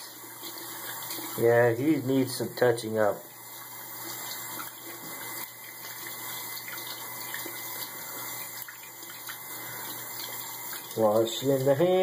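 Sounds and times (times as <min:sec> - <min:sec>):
hands washing under water: 0:03.9 - 0:12.0.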